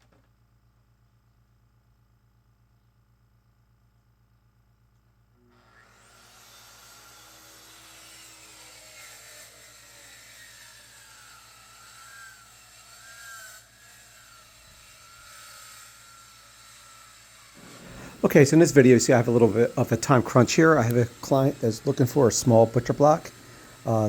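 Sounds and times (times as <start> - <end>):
electric saw cutting wood: 5.4 - 24.0.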